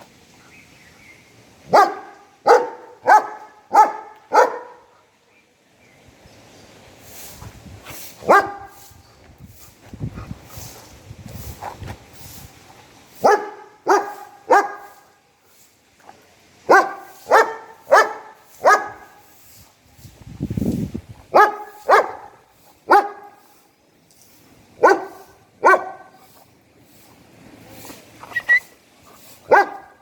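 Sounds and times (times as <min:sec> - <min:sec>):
dog barking: 0:01.7 - 0:04.9, 0:08.2 - 0:08.8, 0:13.2 - 0:15.0, 0:16.7 - 0:19.2, 0:21.3 - 0:23.4, 0:24.8 - 0:26.2, 0:29.5 - 0:30.0.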